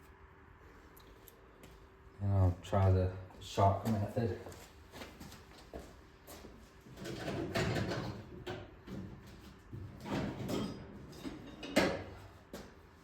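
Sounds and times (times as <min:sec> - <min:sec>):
tools clattering and knocking: 0:07.0 - 0:09.1, 0:09.9 - 0:12.2.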